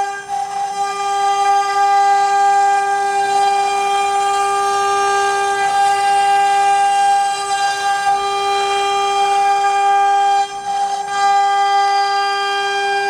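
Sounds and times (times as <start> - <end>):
router spindle whine: 0.0 - 13.0.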